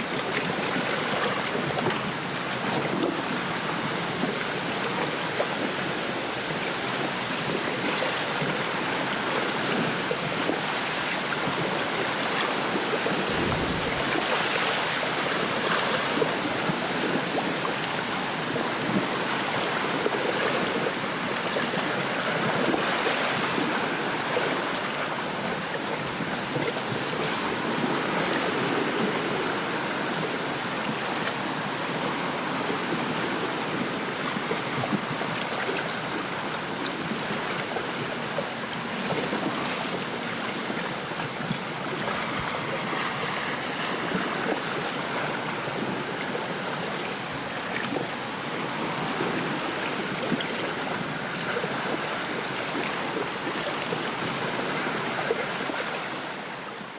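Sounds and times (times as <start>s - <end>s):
small waves lapping: 0.0s - 56.9s
wind rushing through reeds: 12.5s - 15.4s.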